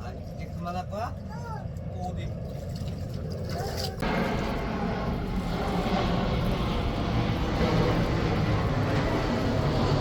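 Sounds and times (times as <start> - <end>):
jet airplane flying over: 4.0 - 10.0.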